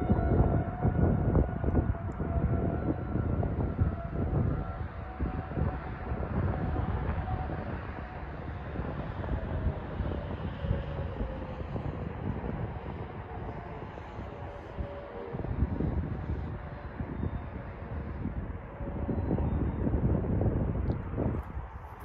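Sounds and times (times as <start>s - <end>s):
distant warning siren: 0.0s - 22.0s
low rumble: 0.0s - 22.0s.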